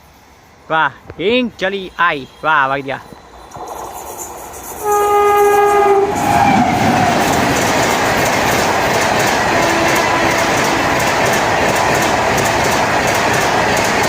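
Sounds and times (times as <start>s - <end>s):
train coaches clattering past: 0.0s - 14.0s
locomotive horn blast: 1.6s - 3.2s, 4.8s - 6.8s, 9.5s - 11.0s.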